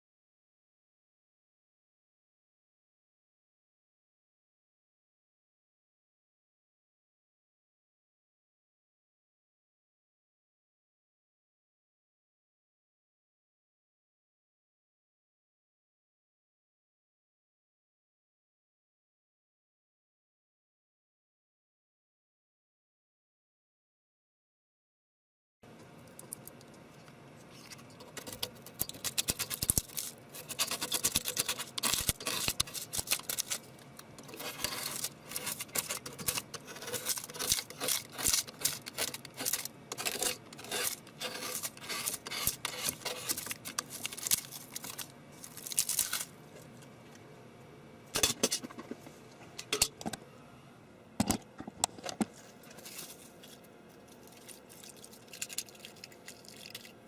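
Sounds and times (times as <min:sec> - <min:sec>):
hard objects clicking and rattling: 0:27.6 - 0:46.3.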